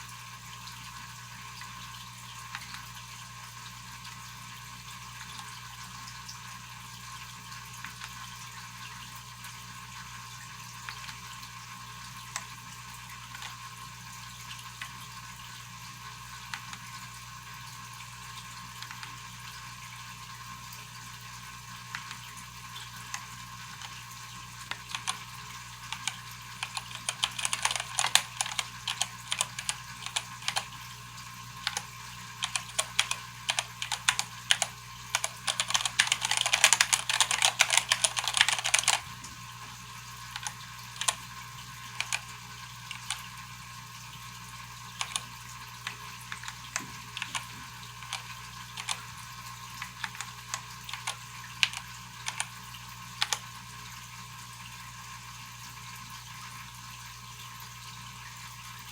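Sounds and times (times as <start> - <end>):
mechanical keyboard typing: 13.3 - 13.6, 16.5 - 17.0, 18.7 - 19.2, 21.9 - 22.2, 24.6 - 30.8, 31.6 - 39.2, 40.3 - 41.3, 41.9 - 42.3, 42.9 - 43.3, 44.9 - 53.5.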